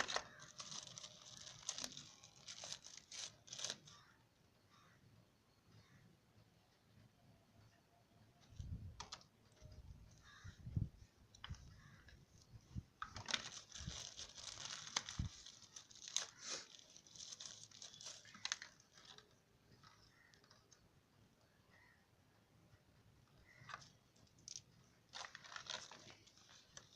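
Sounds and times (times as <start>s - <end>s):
packaging tearing and crinkling: 0.0s - 4.0s, 13.0s - 19.4s, 23.6s - 26.9s.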